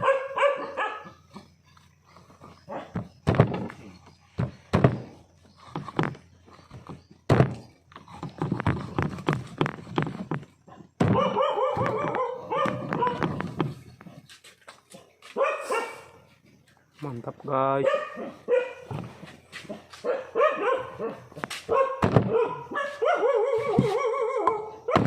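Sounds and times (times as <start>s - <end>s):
dog barking: 0.0s - 1.2s, 2.7s - 3.0s, 10.7s - 13.4s, 15.4s - 16.3s, 17.8s - 19.0s, 19.7s - 25.0s.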